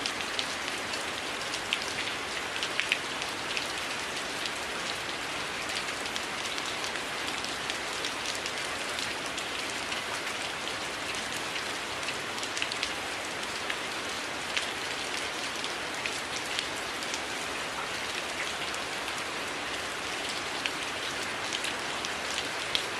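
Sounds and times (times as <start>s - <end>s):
steady rain with ticking drops: 0.0s - 22.9s.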